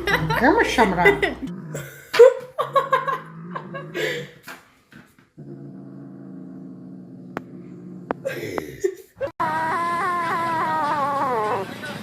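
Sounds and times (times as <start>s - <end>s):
dog growling low: 2.9s - 4.4s, 5.4s - 8.5s.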